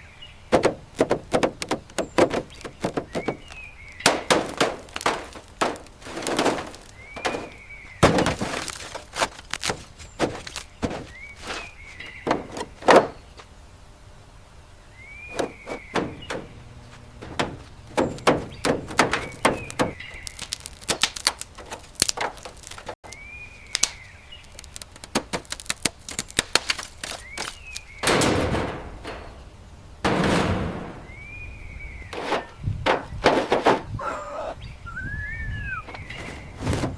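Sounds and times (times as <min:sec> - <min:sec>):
irregular knocks and clicks: 0:00.5 - 0:13.1, 0:15.3 - 0:23.0
rising and falling chirp: 0:34.0 - 0:36.3.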